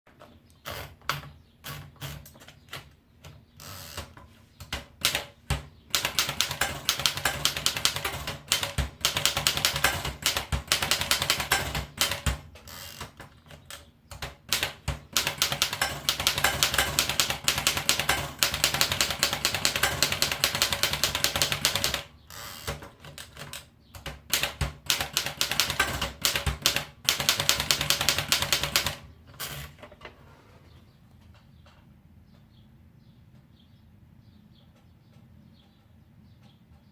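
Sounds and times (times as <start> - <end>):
manual typewriter typing: 0.8 - 30.0.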